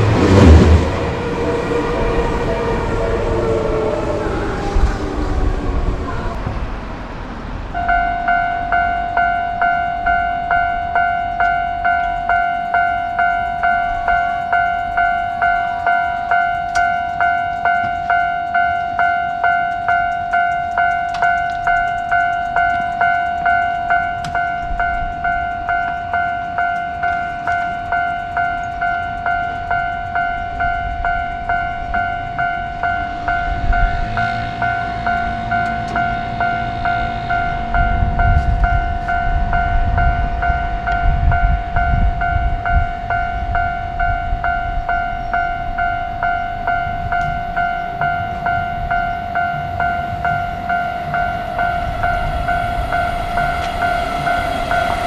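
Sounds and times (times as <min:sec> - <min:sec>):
level crossing alarm bell: 0:00.0 - 0:06.4, 0:07.7 - 0:55.0
low rumble: 0:00.0 - 0:07.0, 0:49.1 - 0:55.0.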